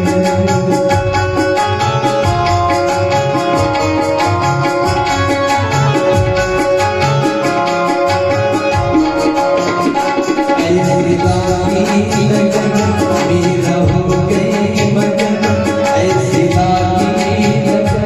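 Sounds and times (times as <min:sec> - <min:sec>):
hand drum rhythm: 0:00.0 - 0:18.0
sustained melodic notes: 0:00.0 - 0:18.0.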